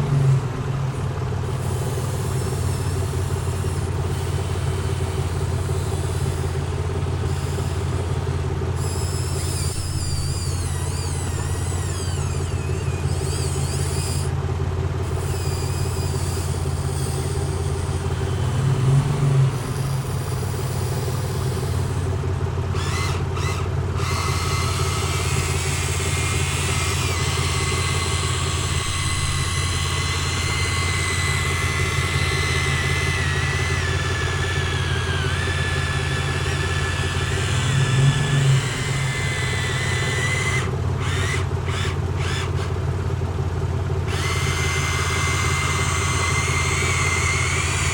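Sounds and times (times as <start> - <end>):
thin wavering whine: 0.0 - 43.3, 44.0 - 47.9
excavator engine drone: 0.0 - 47.9.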